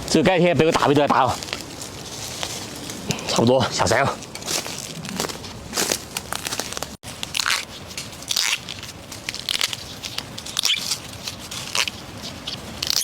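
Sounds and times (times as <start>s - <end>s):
dry plant litter crunching: 0.0s - 13.0s
stems snapping: 4.2s - 12.0s, 12.8s - 13.0s.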